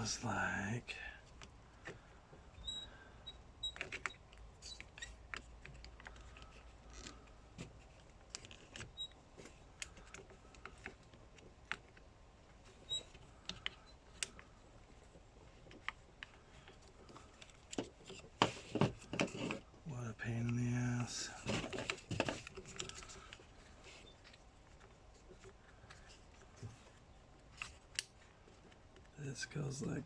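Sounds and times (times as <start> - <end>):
plastic parts clicking: 3.7 - 19.7.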